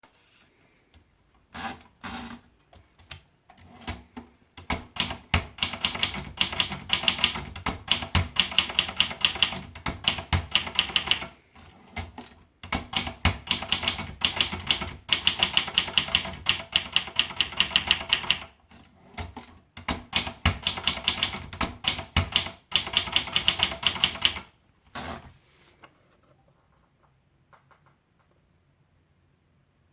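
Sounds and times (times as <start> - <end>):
manual typewriter keystrikes: 3.8 - 11.3, 12.0 - 18.5, 19.2 - 24.5.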